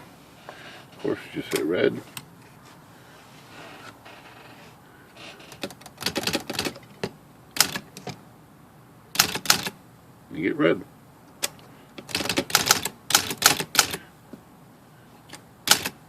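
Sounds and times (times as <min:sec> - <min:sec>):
manual typewriter key strikes: 0:07.6 - 0:08.2, 0:09.2 - 0:09.8, 0:11.4 - 0:14.0, 0:15.6 - 0:16.0.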